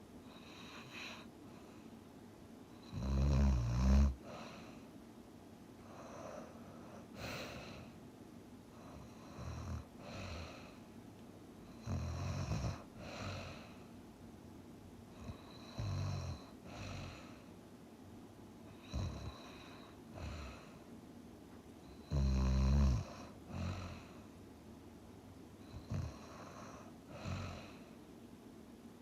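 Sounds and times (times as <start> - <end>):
person snoring: 22.0 - 24.2.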